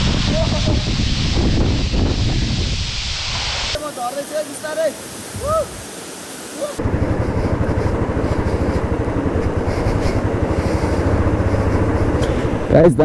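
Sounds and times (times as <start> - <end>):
rushing water: 0.0 - 13.0
rising and falling call: 3.7 - 10.2
motorcycle engine running: 6.8 - 13.0.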